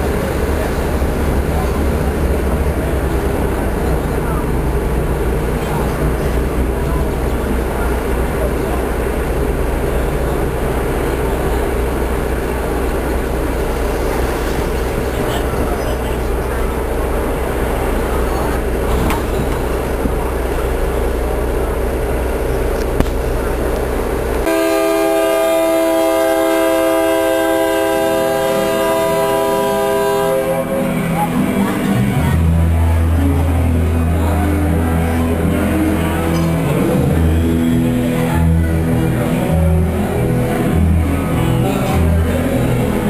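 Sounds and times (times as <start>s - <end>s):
rail coach rumbling and rattling: 0.0s - 43.0s
locomotive horn blast: 24.4s - 43.0s.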